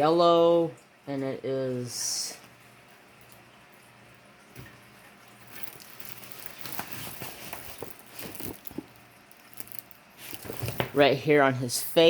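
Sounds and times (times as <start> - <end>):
soft rustling: 5.4 - 11.1.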